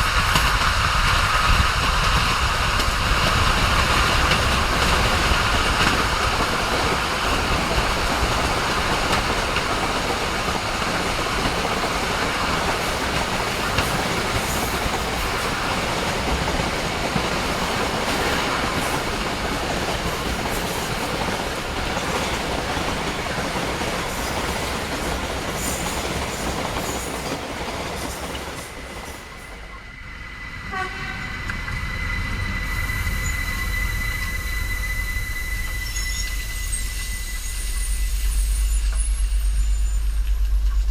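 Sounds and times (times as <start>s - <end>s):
train wheels rumbling on rails: 0.0s - 40.9s
thin high squeal: 31.2s - 40.2s.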